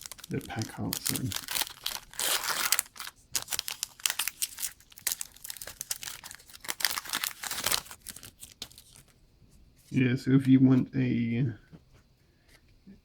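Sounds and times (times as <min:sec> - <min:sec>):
foil wrapper crinkling and tearing: 0:00.0 - 0:09.2.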